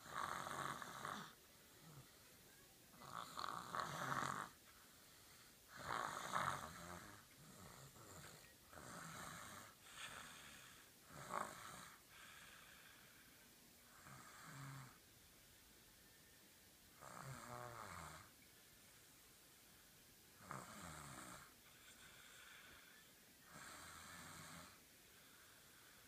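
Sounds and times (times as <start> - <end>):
person snoring: 0.0 - 2.2, 3.0 - 4.6, 5.7 - 13.2, 13.9 - 15.0, 17.0 - 18.3, 20.4 - 24.8.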